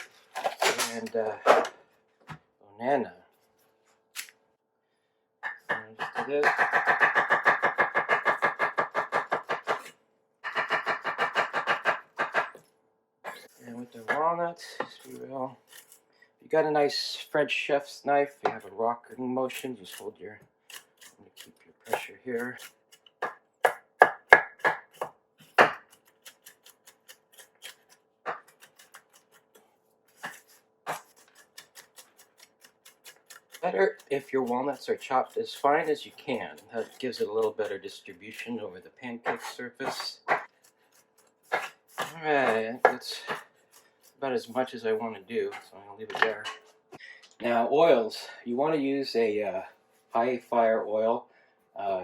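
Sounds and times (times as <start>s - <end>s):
knife chopping nuts on cutting board: 5.4s - 12.7s, 14.8s - 15.1s, 20.7s - 38.5s, 39.2s - 44.2s.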